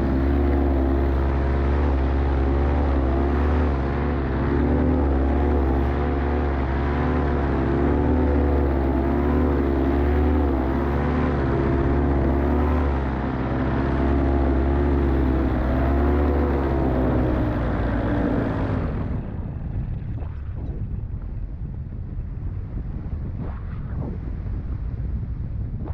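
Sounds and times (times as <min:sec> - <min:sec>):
propeller engine running rough: 0:00.0 - 0:25.9
wind rush: 0:18.6 - 0:25.9.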